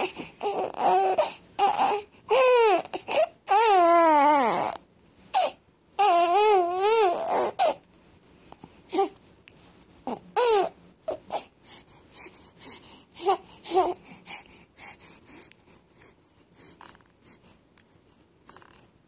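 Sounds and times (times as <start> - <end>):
soft breathy noises: 0.0 - 3.5, 7.2 - 19.0
baby cooing and babbling: 0.0 - 7.8, 10.1 - 11.5, 13.2 - 14.0.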